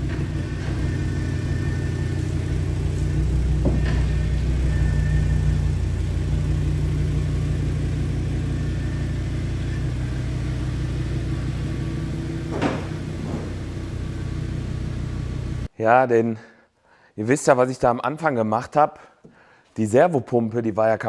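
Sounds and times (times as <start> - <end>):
car engine idling: 0.0 - 15.7
sharp knock: 12.5 - 13.6.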